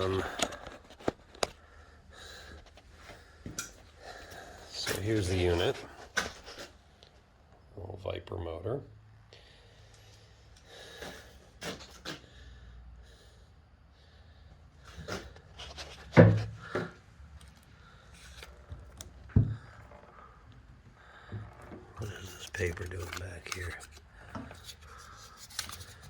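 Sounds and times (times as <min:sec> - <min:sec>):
light rubbing and rustling: 0:21.6 - 0:26.0.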